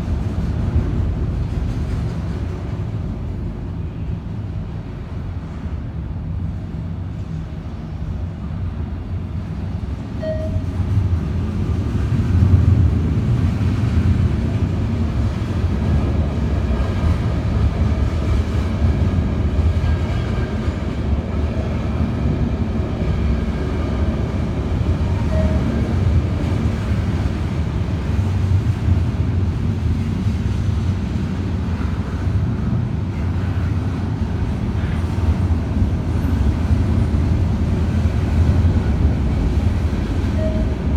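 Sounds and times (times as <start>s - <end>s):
freight train wheels rumbling: 0.0s - 40.9s.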